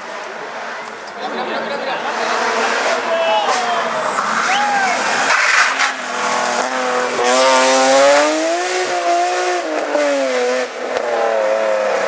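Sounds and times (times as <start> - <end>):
rally car engine revving high: 0.5 - 12.0.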